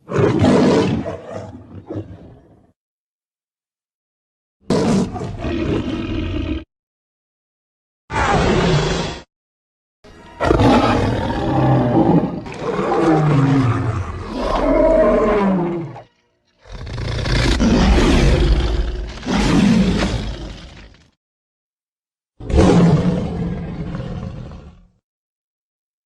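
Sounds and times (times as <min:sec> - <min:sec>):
big cat roaring: 0:04.7 - 0:06.7, 0:08.1 - 0:09.3, 0:10.4 - 0:21.0, 0:22.4 - 0:25.0.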